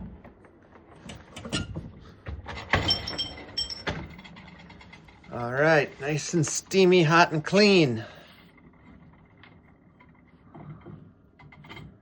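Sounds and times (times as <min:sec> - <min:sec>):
metal pipe fittings clinking: 0:02.8 - 0:03.9.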